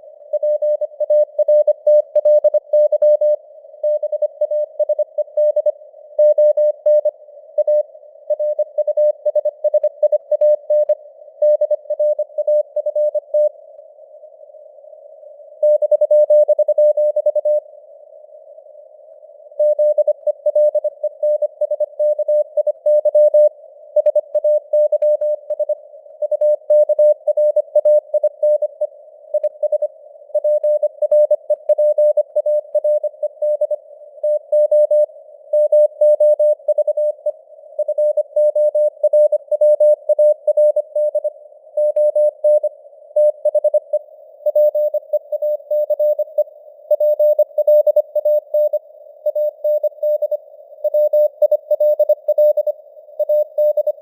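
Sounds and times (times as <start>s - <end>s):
morse code tone: 44.5s - 54.0s.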